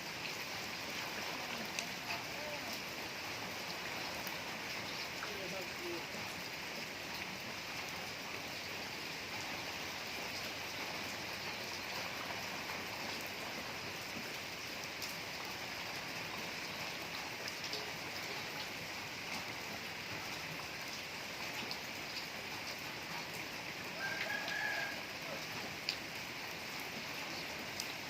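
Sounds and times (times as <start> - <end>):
steady rainfall: 0.0 - 28.0.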